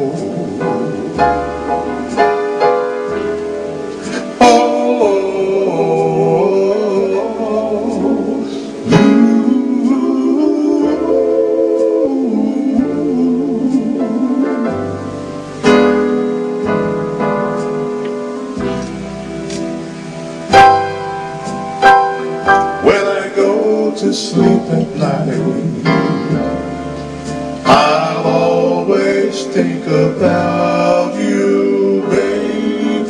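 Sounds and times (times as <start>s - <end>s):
wordless vocal with vibrato: 0.0s - 1.2s, 4.0s - 15.2s, 22.8s - 26.4s, 27.6s - 33.0s
electronic keyboard chords: 0.0s - 5.3s, 12.8s - 23.7s, 24.3s - 33.0s.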